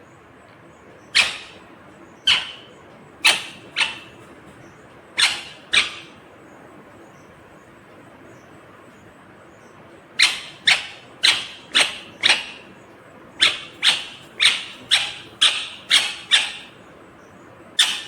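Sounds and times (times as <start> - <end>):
parakeet screeching: 1.2 - 4.3, 5.2 - 6.2, 10.2 - 12.8, 13.4 - 16.8, 17.8 - 18.0.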